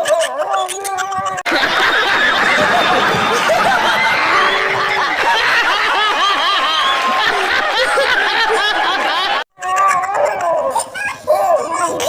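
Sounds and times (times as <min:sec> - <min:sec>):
crowd laughing: 0:01.4 - 0:09.5.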